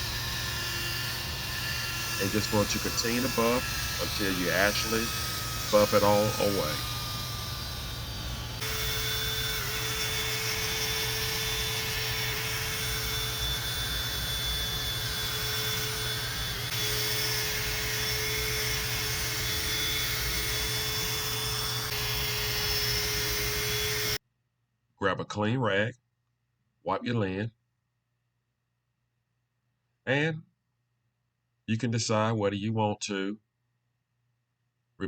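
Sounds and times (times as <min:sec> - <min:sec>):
drill motor whine: 0:00.0 - 0:24.2.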